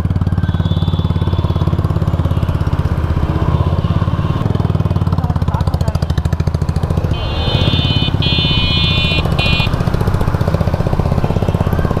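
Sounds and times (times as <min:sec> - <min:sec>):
motorcycle engine idling: 0:00.0 - 0:12.0
high horn-like tone: 0:07.1 - 0:09.9.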